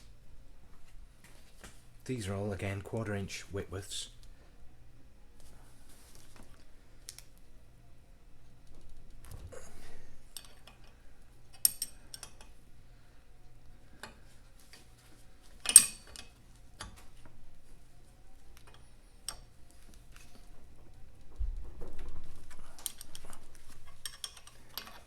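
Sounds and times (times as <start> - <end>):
spanner and metal parts clinking: 10.3 - 12.5, 15.6 - 17.0, 22.8 - 25.0.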